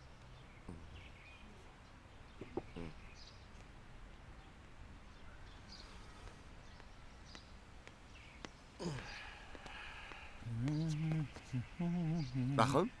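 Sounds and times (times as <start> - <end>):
falling vocal sound: 8.8 - 9.4.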